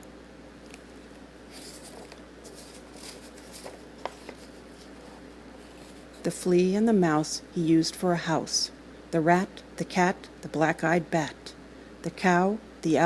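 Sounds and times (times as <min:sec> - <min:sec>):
faint steady hum: 0:00.0 - 0:13.0
soft rustles: 0:00.7 - 0:06.3.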